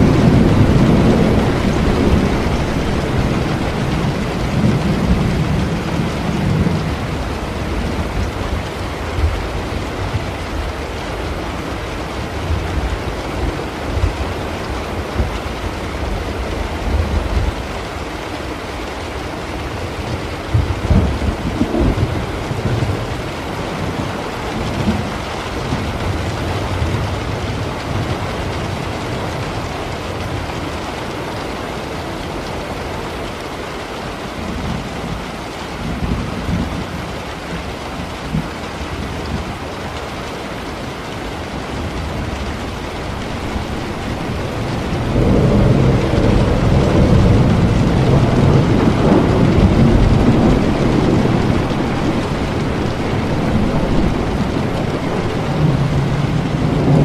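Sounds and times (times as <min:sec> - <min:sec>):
rolling thunder: 0:00.0 - 0:18.0, 0:20.1 - 0:29.6, 0:41.6 - 0:57.0
steady rain: 0:00.0 - 0:57.0.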